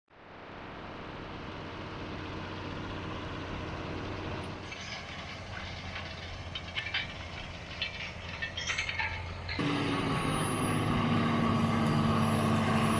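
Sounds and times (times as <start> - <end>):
tractor diesel engine running: 0.2 - 12.9
light clicking and rattling: 4.7 - 9.6.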